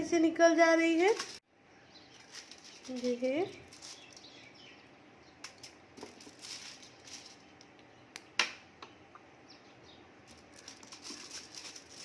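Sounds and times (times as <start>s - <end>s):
foil crinkling: 2.1s - 4.5s, 5.4s - 7.6s, 10.2s - 12.0s.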